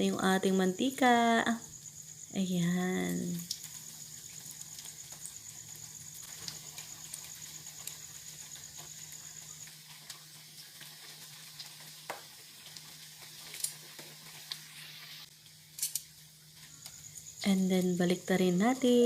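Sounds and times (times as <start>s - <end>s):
food frying in hot oil: 0.0s - 19.0s
small crackling pops: 3.3s - 5.4s, 6.2s - 14.7s.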